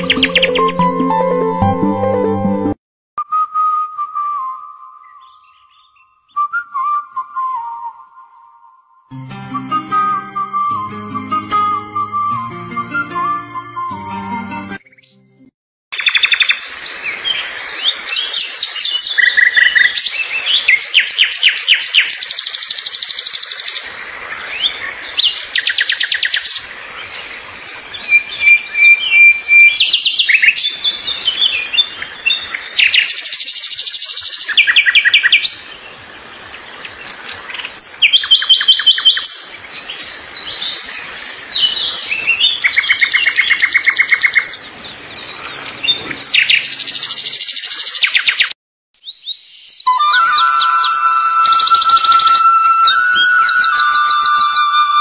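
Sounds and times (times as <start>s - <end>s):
songbirds singing and chirping: 0.0s - 0.9s, 5.0s - 7.0s, 16.0s - 55.0s.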